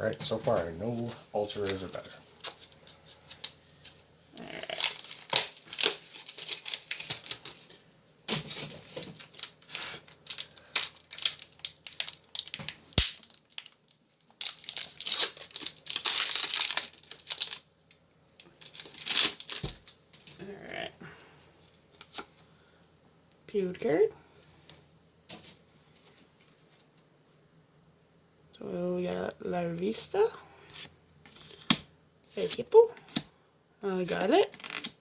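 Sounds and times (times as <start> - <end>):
foil wrapper crinkling and tearing: 1.6 - 7.8, 8.4 - 20.4, 34.5 - 35.0
trading cards rustling: 4.8 - 7.8, 8.4 - 13.8, 14.4 - 17.6, 18.4 - 19.8.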